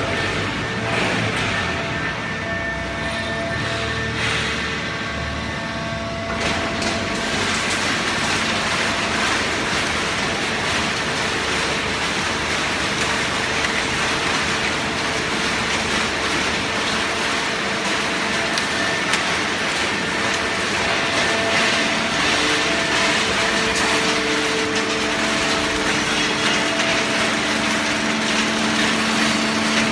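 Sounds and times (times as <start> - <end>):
baler machine running: 0.0 - 29.9.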